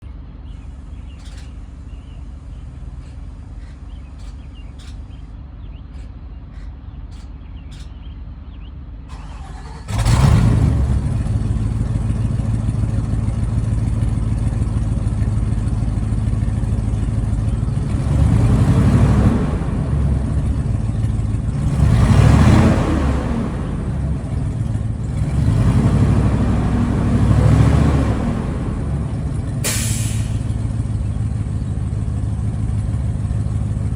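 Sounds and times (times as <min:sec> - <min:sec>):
low steady rumble: 0:00.0 - 0:33.9
bus engine starting and revving: 0:09.1 - 0:33.9.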